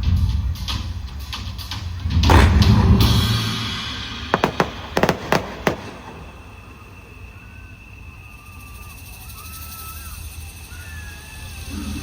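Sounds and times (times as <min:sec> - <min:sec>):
fireworks blast: 0:02.1 - 0:08.2
sharp firework cracks: 0:02.2 - 0:07.7.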